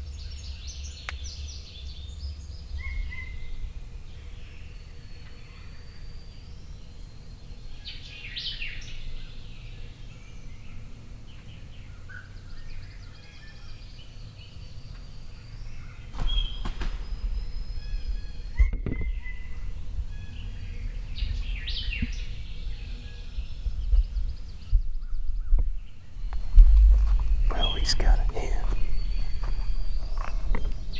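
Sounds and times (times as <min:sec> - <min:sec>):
songbirds singing: 0:00.0 - 0:30.9
thin high bird calls: 0:15.7 - 0:23.3
low rumble: 0:17.0 - 0:30.9.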